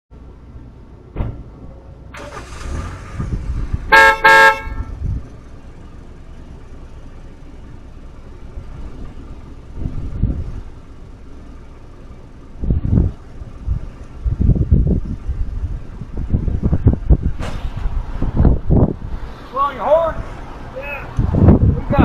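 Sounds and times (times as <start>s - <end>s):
thump: 1.1s - 1.6s, 17.4s - 17.9s
car horn toots: 3.9s - 5.0s.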